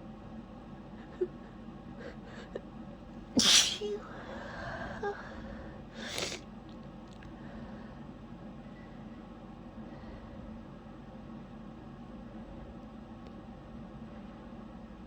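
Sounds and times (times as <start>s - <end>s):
person sneezing: 3.4s - 4.2s, 6.0s - 6.4s
breathy sniff: 3.4s - 6.4s.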